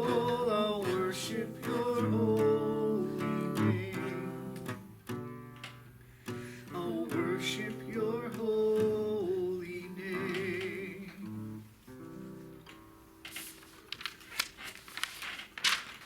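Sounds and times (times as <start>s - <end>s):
person singing long notes: 0.0s - 4.8s, 6.7s - 11.6s
strummed acoustic guitar: 0.0s - 13.2s.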